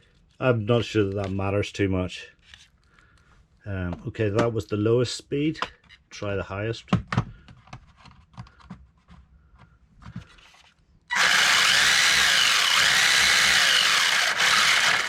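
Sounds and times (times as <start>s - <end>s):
toy car motor whining: 11.1s - 15.0s.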